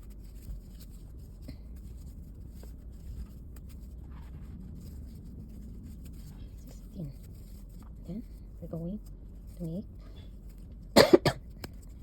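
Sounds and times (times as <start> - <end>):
crochet hook rubbing yarn: 0.0 - 12.0
steady low hum: 0.0 - 12.0.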